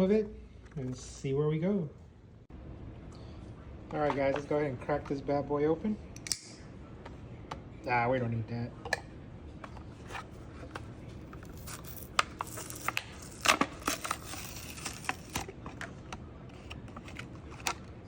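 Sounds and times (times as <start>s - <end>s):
toy car parts clicking and scraping: 11.2s - 15.9s.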